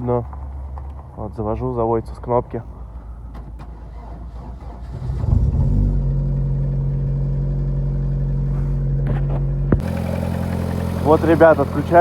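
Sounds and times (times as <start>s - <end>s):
car engine starting and idling: 0.0s - 12.0s.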